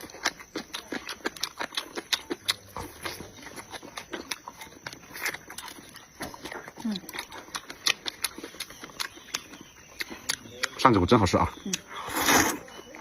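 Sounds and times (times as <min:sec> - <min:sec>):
chewing crunchy pickles: 0:00.0 - 0:13.0
wet mouth clicks: 0:06.4 - 0:10.8, 0:11.6 - 0:12.8.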